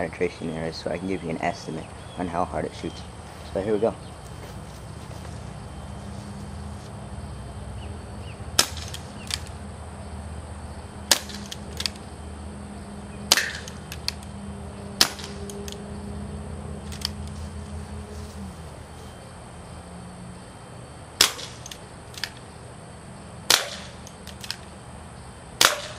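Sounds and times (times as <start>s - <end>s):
steady low hum: 0.0s - 25.9s
airsoft revolver shots: 8.6s - 9.5s, 11.1s - 12.0s, 13.3s - 14.2s, 15.0s - 15.6s, 21.2s - 22.4s, 23.5s - 24.6s, 25.6s - 25.9s.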